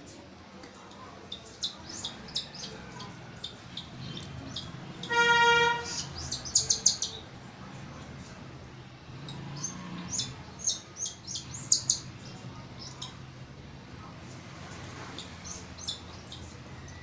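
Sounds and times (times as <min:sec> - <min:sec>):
chicks begging chirps: 0:01.2 - 0:07.4, 0:09.2 - 0:13.2, 0:14.8 - 0:17.0.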